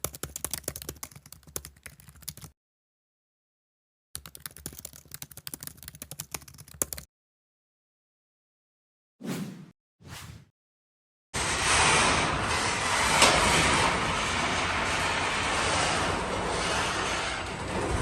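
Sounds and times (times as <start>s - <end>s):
roller door clattering: 12.4s - 18.0s.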